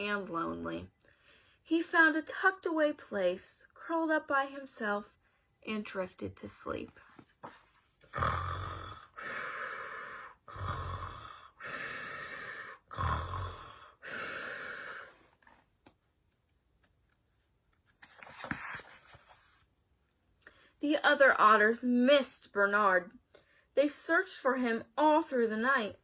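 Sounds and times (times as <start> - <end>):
woman imitating snoring: 8.1 - 15.1.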